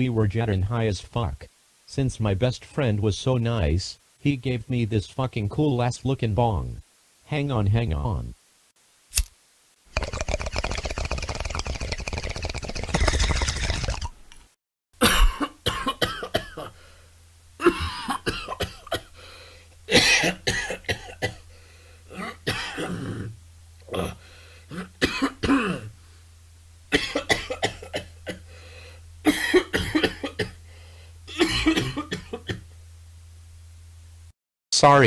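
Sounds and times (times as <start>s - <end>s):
person coughing hard: 15.0s - 16.8s, 17.6s - 19.2s, 19.9s - 21.5s, 22.1s - 26.0s, 26.9s - 28.5s, 29.2s - 30.6s, 31.3s - 32.7s
throat clearing: 15.0s - 16.8s, 17.6s - 19.0s, 22.1s - 25.9s, 29.3s - 30.6s, 31.3s - 32.7s.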